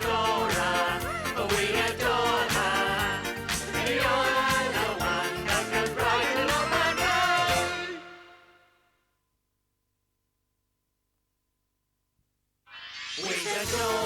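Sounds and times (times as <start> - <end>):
singers over upbeat band: 0.0 - 8.2, 13.2 - 14.0.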